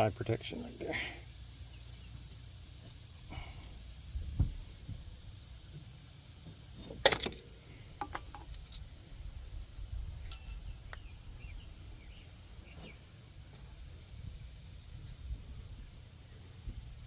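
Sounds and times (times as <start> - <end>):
metal tools clinking: 10.2 - 10.7.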